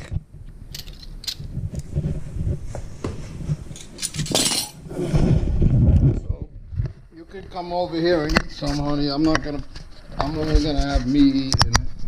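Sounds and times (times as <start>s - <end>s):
cutlery and dishes clinking: 3.8s - 4.8s.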